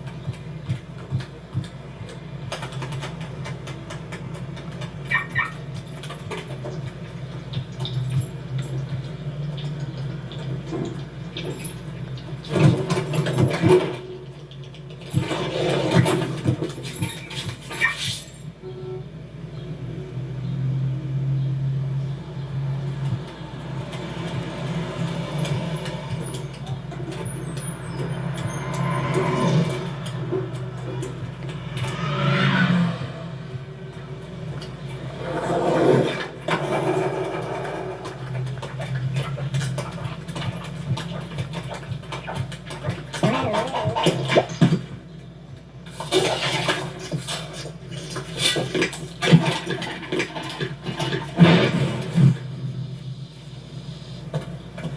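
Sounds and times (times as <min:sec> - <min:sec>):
engine humming: 0:00.0 - 0:54.9
vehicle engine passing: 0:19.5 - 0:42.5.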